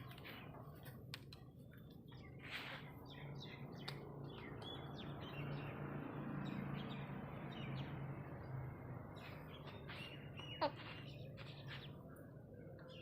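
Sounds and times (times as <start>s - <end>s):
small birds chirping: 0.0s - 13.0s.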